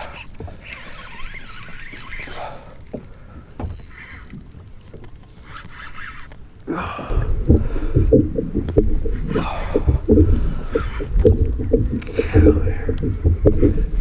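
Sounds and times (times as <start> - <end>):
water around kayak: 0.0 - 14.0
breathy vocal sounds: 6.6 - 14.0
wind buffeting microphone: 7.0 - 14.0.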